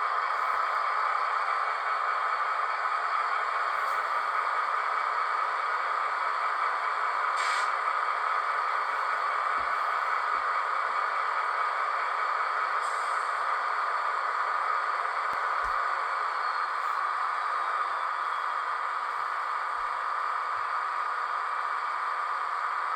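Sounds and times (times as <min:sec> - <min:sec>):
diesel locomotive from small speaker: 0:00.0 - 0:22.9
short hiss: 0:07.4 - 0:07.8.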